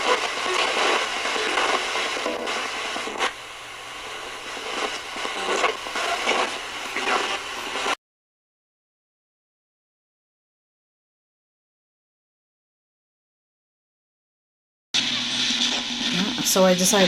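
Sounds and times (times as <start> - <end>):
radio static hiss: 0.0 - 8.0, 15.0 - 17.0
snatches of radio stations: 0.0 - 8.0.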